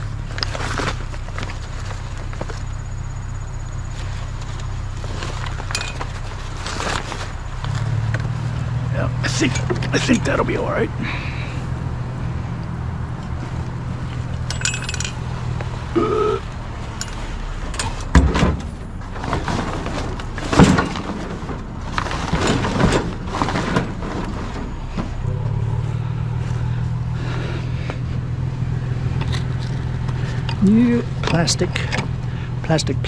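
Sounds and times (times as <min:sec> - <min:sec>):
vehicle engine idling: 0:00.0 - 0:33.0
metal junk clanking and rattling: 0:03.8 - 0:08.6, 0:09.2 - 0:10.8, 0:13.4 - 0:15.4, 0:16.8 - 0:25.6.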